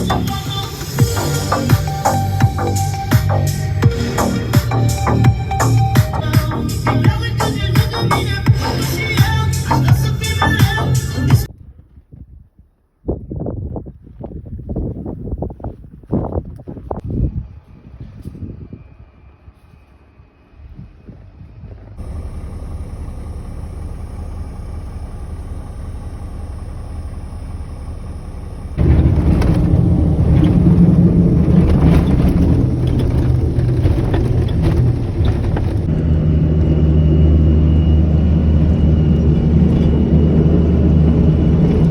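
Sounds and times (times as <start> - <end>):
truck diesel engine running: 0.0 - 11.5, 22.0 - 41.9.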